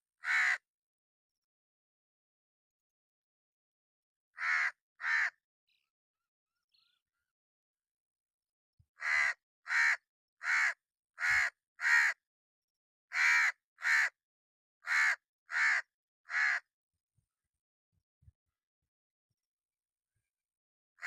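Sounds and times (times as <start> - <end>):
crow cawing: 0.2 - 0.7, 4.4 - 5.4, 9.0 - 12.2, 13.1 - 14.2, 14.8 - 16.7.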